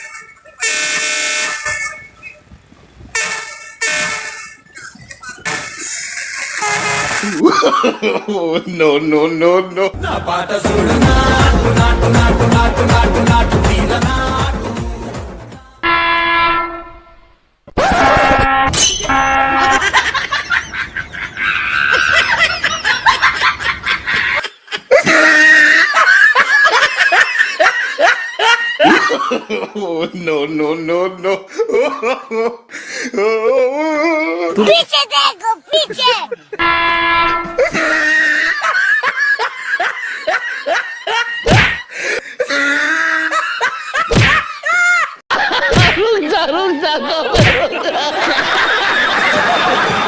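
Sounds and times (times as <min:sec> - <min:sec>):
high-pitched laughter: 0:00.0 - 0:00.7, 0:04.2 - 0:08.3, 0:17.8 - 0:29.8, 0:33.9 - 0:36.6, 0:37.4 - 0:50.0
train horn blast: 0:15.8 - 0:17.4, 0:18.2 - 0:19.8, 0:36.6 - 0:37.6
sharp thump: 0:41.5 - 0:41.8, 0:44.1 - 0:44.4, 0:45.7 - 0:46.0, 0:47.4 - 0:47.7.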